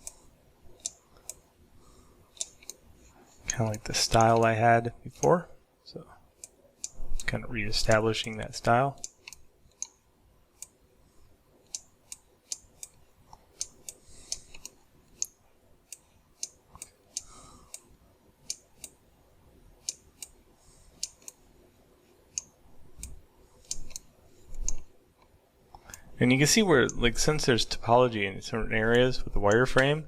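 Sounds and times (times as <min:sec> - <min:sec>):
computer mouse clicks: 0:00.0 - 0:00.2, 0:00.8 - 0:01.4, 0:02.3 - 0:02.8, 0:09.0 - 0:10.0, 0:11.6 - 0:19.0, 0:19.8 - 0:21.4, 0:22.3 - 0:26.1.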